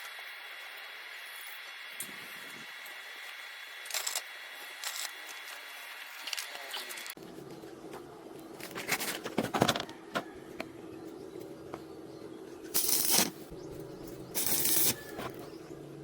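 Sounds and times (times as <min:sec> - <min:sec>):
welding arc crackling and hissing: 0:00.0 - 0:07.2, 0:12.7 - 0:15.4.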